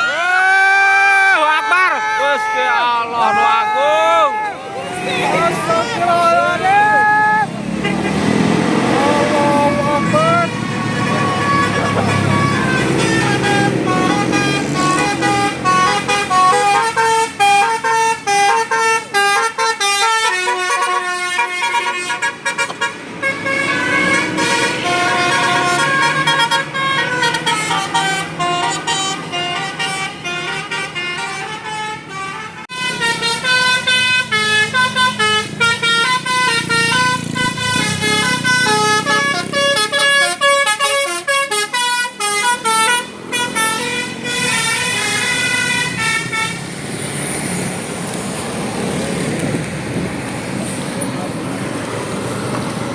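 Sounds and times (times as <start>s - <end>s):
bus engine running: 2.8s - 52.9s
musical air horn melody: 7.8s - 46.6s.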